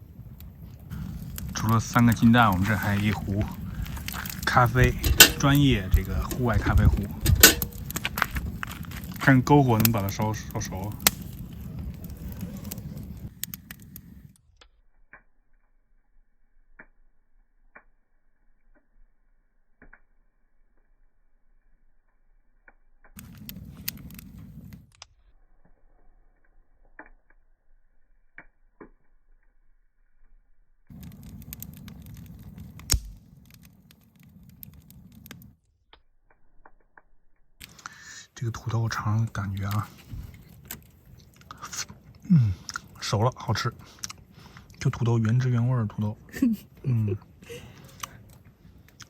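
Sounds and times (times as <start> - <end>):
faint low hiss: 0.0 - 14.4
loud snap of fire: 0.0 - 14.4, 23.1 - 25.1, 30.9 - 35.7, 37.6 - 45.7, 46.3 - 49.0
campfire crackling and popping: 0.0 - 49.0
low rumble of flames: 0.0 - 49.0.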